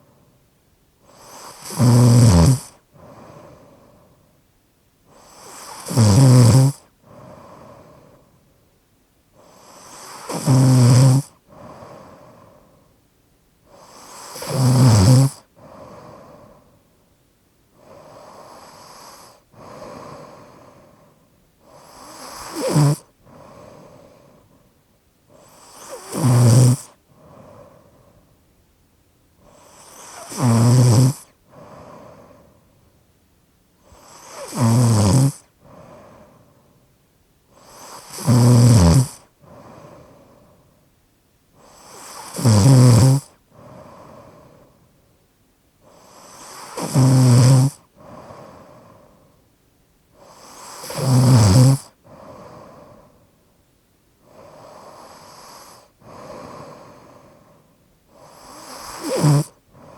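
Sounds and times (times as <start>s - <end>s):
person snoring: 1.1s - 4.0s, 5.1s - 8.2s, 9.4s - 12.7s, 13.7s - 16.6s, 17.8s - 24.6s, 25.3s - 28.1s, 29.5s - 32.5s, 33.9s - 36.5s, 37.5s - 40.5s, 41.6s - 44.7s, 45.8s - 49.2s, 50.2s - 53.1s, 54.2s - 57.5s, 58.1s - 59.9s.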